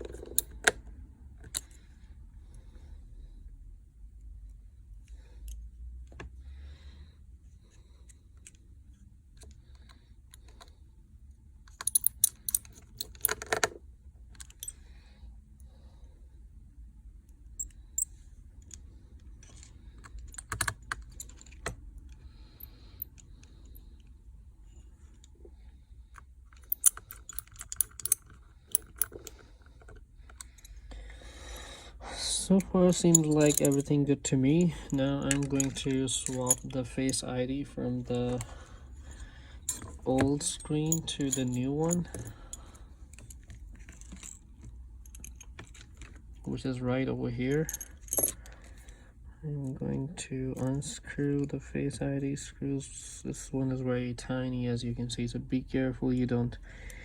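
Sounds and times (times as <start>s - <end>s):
small repair tools tapping and clicking: 11.7s - 13.7s, 26.6s - 30.7s.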